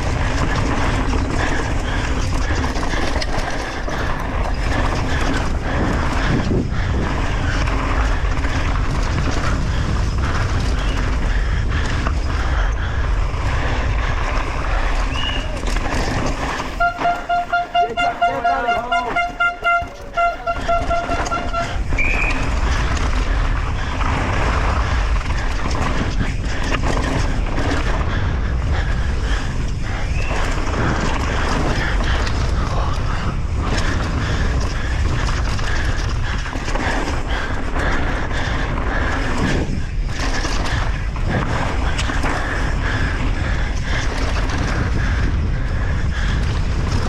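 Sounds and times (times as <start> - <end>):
wind rushing over microphone: 0.0 - 47.0
horn blasts: 16.8 - 22.0.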